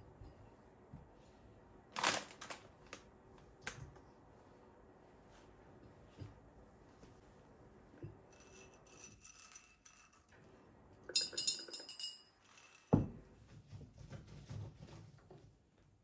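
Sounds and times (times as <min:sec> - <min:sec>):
kitchenware clinking: 0:11.1 - 0:13.2.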